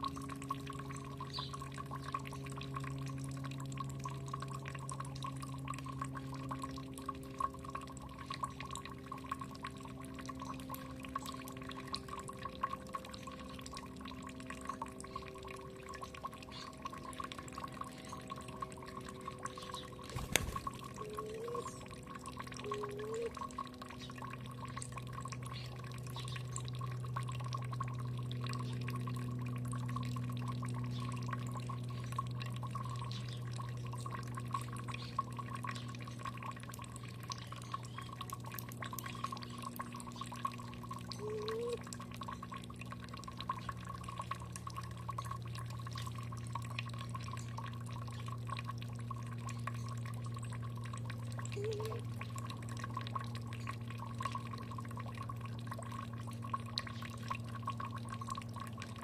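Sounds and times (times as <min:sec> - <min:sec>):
steady low hum: 0:00.0 - 0:59.0
water dripping and trickling: 0:00.0 - 0:59.0.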